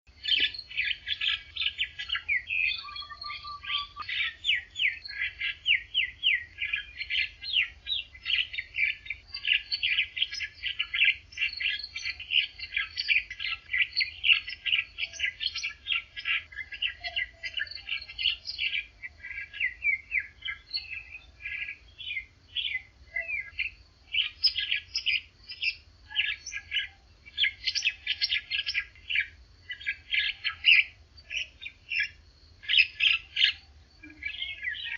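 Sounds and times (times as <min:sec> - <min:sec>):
songbirds chirping: 0:00.0 - 0:34.9.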